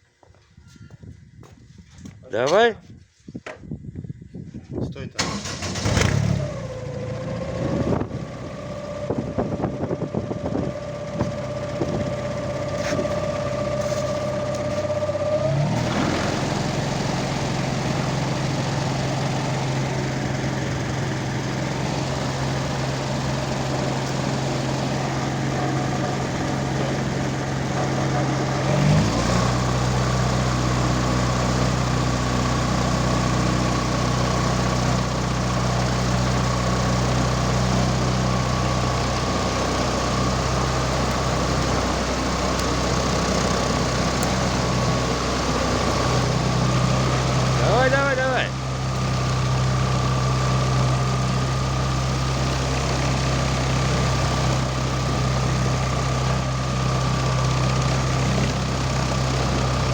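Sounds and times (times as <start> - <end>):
propeller aircraft engine running: 5.2 - 59.9.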